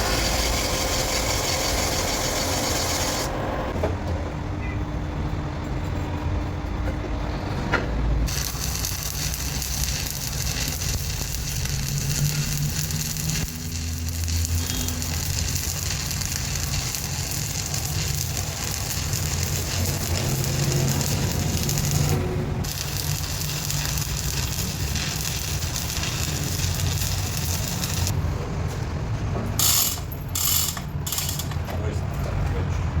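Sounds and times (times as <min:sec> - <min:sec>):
metalworking machinery running: 0:00.0 - 0:03.8, 0:08.3 - 0:28.2.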